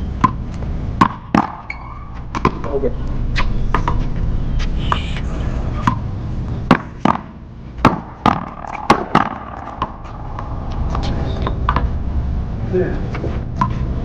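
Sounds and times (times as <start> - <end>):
paddles smacking rubber ball: 1.0 - 1.7, 2.3 - 2.7, 6.7 - 10.5
ball hitting wall: 1.0 - 2.7, 6.7 - 11.0.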